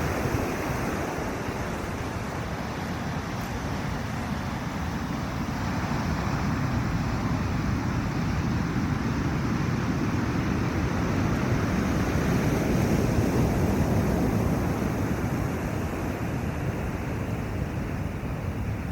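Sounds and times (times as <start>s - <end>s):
ocean surf rushing: 0.0s - 18.9s
wind on microphone: 0.0s - 18.9s.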